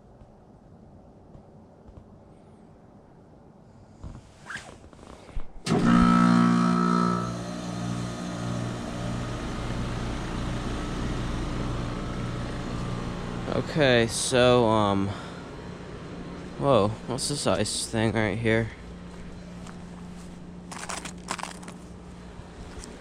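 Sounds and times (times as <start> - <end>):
heat pump unit humming: 5.6 - 23.0.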